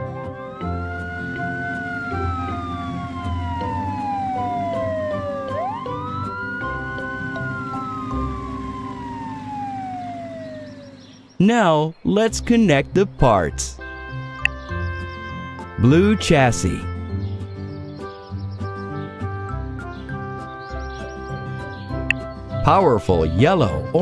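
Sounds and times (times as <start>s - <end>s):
light background music: 0.0s - 11.2s, 12.1s - 24.0s
siren-like wails: 0.2s - 11.3s.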